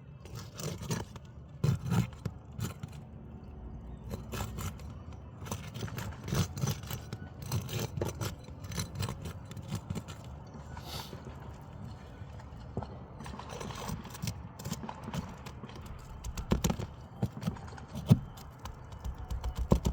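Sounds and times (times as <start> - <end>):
roof shingle cracking and scraping: 4.0 - 10.4, 11.2 - 19.9.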